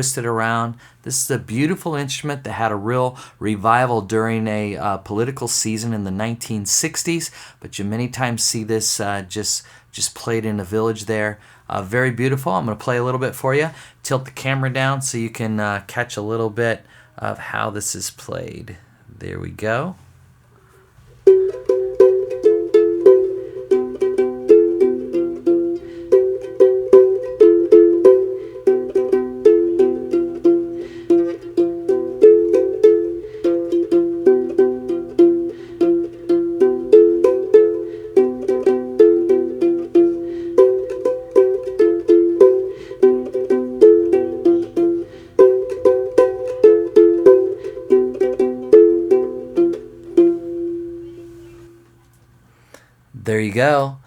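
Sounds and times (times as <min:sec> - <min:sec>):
plucked bow harp: 0:21.2 - 0:51.9.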